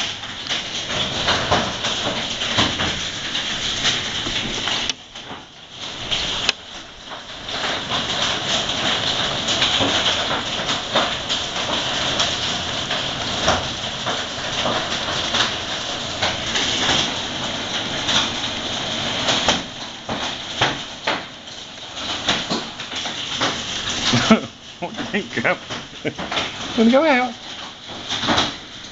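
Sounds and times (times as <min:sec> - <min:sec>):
hail hissing down: 0:00.0 - 0:28.9
hailstones cracking on hard surfaces: 0:00.0 - 0:28.9.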